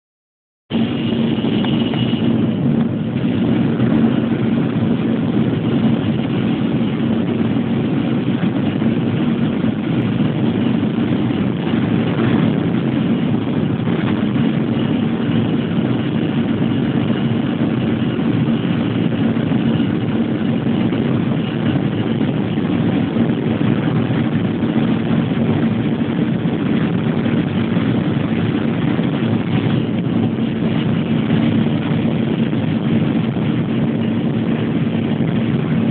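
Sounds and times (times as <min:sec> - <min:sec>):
airplane engine during takeoff: 0:00.7 - 0:35.9.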